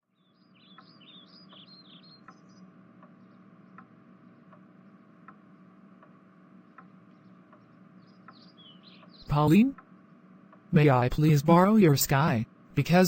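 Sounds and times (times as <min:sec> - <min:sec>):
bird-like chirps: 0:00.1 - 0:04.9, 0:07.0 - 0:10.2
low hum: 0:00.1 - 0:13.0
steady ticking: 0:00.5 - 0:13.0.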